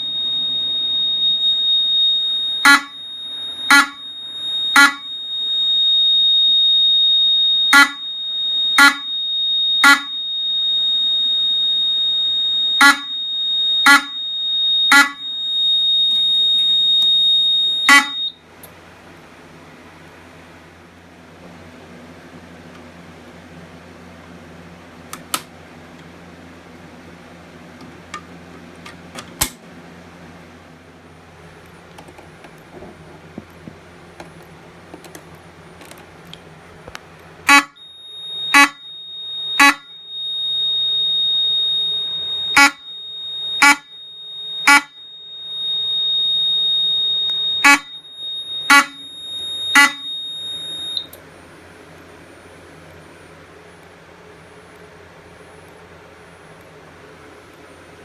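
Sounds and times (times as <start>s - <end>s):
steady high-pitched tone: 0.0s - 18.4s, 37.4s - 51.6s
fire alarm horn pulses: 0.0s - 18.5s, 37.4s - 52.0s
low fan-like hum: 0.0s - 58.0s.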